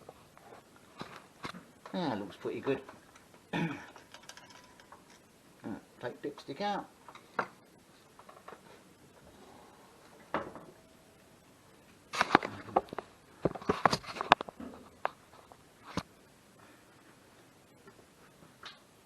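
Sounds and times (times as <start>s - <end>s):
parts clattering: 3.9s - 5.3s.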